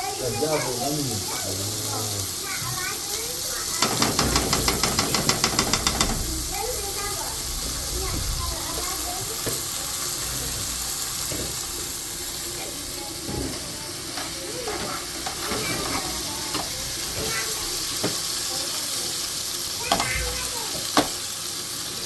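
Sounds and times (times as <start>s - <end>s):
food sizzling in hot oil: 0.0s - 22.0s
utensil scraping pan: 3.7s - 6.7s.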